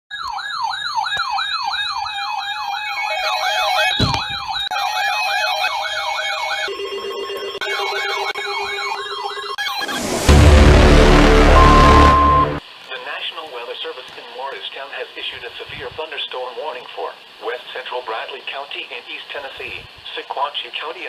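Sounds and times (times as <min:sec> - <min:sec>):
electronic siren yelping: 0:00.1 - 0:12.6
steady lower siren tone: 0:00.1 - 0:12.6.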